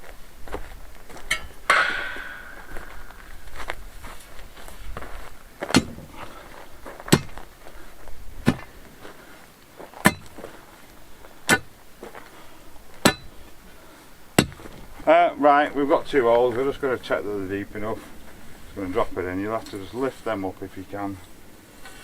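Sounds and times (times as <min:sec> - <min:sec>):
metal tool striking stony ground: 0:01.3 - 0:03.6, 0:05.7 - 0:06.3, 0:07.1 - 0:07.5, 0:08.4 - 0:08.7, 0:10.0 - 0:10.4, 0:11.4 - 0:11.8, 0:13.0 - 0:13.4, 0:14.4 - 0:14.9.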